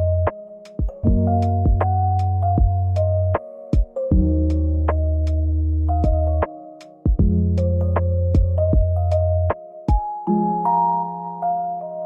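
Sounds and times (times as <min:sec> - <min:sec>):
electronic music with synth chords: 0:00.0 - 0:12.0.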